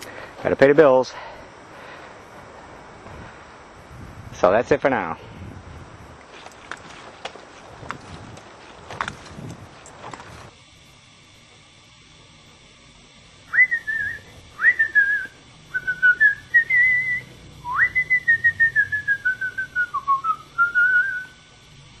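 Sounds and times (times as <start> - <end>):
person whistling a tune: 13.5 - 21.4.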